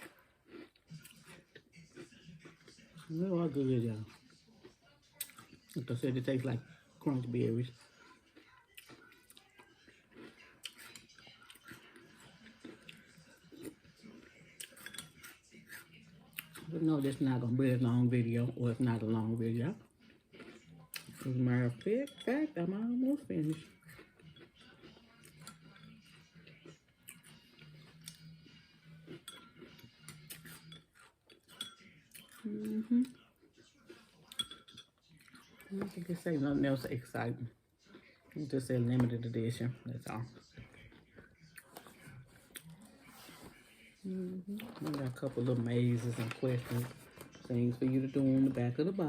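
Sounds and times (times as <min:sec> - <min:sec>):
chewing crunchy cereal: 0:00.0 - 0:21.8, 0:23.2 - 0:49.0
spoon clinking against bowl: 0:14.6 - 0:15.9, 0:21.0 - 0:22.6, 0:29.0 - 0:32.4, 0:34.2 - 0:35.3.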